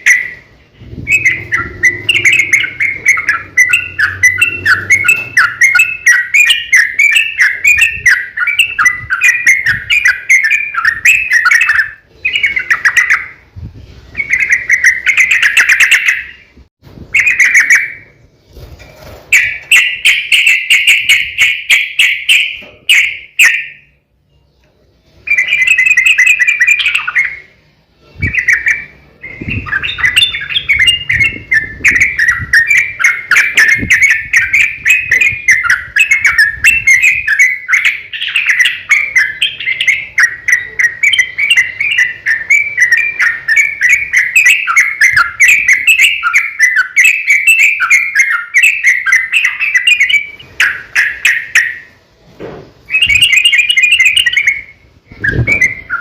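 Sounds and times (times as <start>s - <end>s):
bird singing bubbly chattering phrases: 0.0s - 13.5s, 28.2s - 51.9s.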